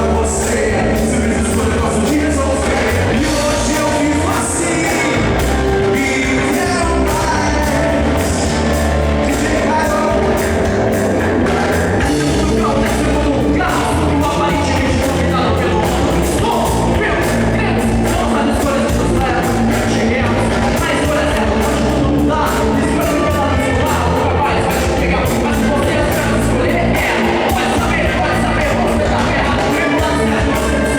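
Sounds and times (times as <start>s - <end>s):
drums: 0.0s - 30.9s
live rock band playing: 0.0s - 30.9s
person singing: 0.0s - 30.9s.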